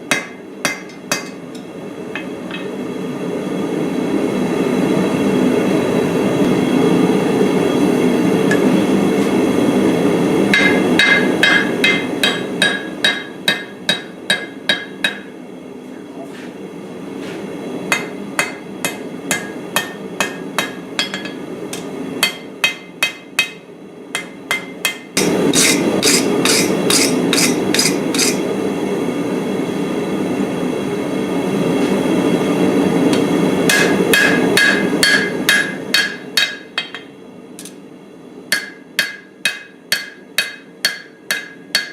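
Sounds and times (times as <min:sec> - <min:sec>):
hammer striking steel on anvil: 0:00.0 - 0:02.7, 0:10.5 - 0:15.4, 0:17.9 - 0:28.4, 0:33.7 - 0:37.8, 0:38.5 - 0:41.9.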